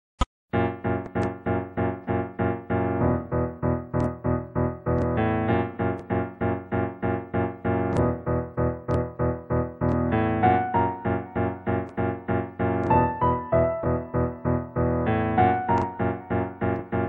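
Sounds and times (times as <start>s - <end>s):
sharp clicks: 1.0s - 1.5s, 3.9s - 4.3s, 4.9s - 5.2s, 8.9s - 9.2s, 9.8s - 10.1s, 12.8s - 13.2s, 15.6s - 17.0s.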